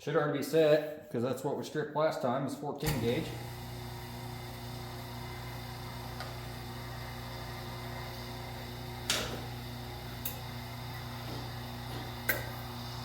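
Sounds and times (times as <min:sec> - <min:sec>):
wire-stripping machine humming: 0:02.8 - 0:13.0.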